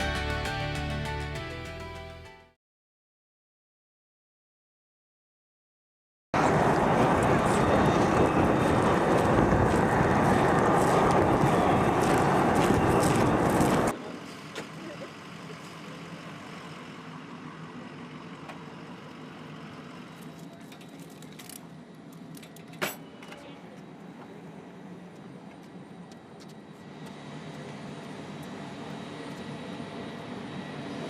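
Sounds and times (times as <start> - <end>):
jet engine noise: 6.4 - 14.4, 21.7 - 31.0.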